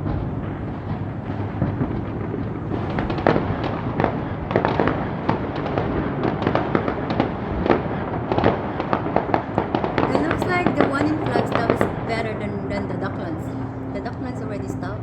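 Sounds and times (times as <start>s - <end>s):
rolling rumble: 0.0s - 7.1s
fireworks bangs and crackling: 0.8s - 14.4s.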